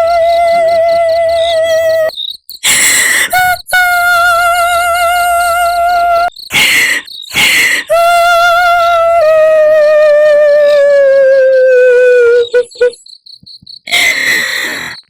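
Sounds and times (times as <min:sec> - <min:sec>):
ghostly female wailing: 0:00.0 - 0:02.1, 0:02.8 - 0:13.0, 0:13.9 - 0:15.0
crickets chirping: 0:00.0 - 0:15.0
breathy rushes: 0:02.6 - 0:03.4, 0:06.5 - 0:08.0, 0:13.9 - 0:15.0.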